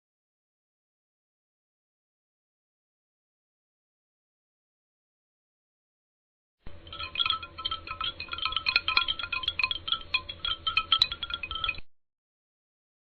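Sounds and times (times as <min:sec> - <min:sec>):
metal chimes tinkling: 0:06.7 - 0:11.9.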